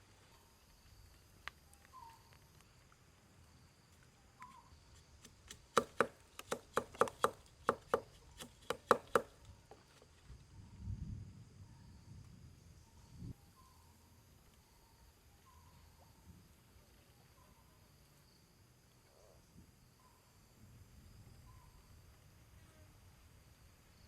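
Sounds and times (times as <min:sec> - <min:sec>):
blade chopping: 0:05.4 - 0:09.3.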